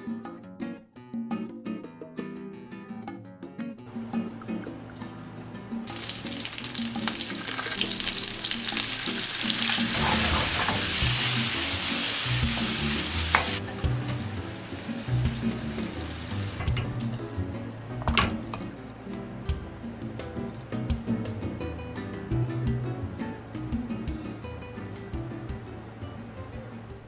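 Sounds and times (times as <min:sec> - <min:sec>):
guitar music: 0:00.0 - 0:27.0
food sizzling in a frying pan: 0:05.0 - 0:16.8.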